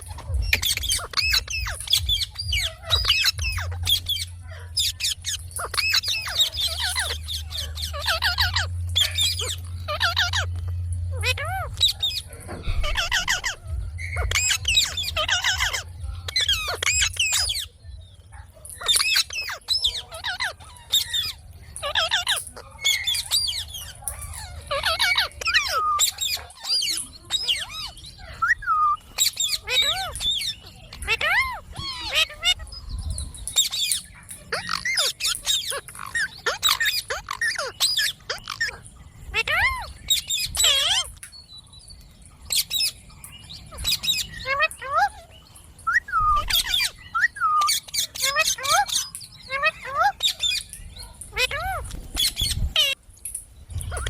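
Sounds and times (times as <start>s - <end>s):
low steady hum: 0.0s - 18.8s
parakeet chattering and squawking: 0.0s - 54.0s.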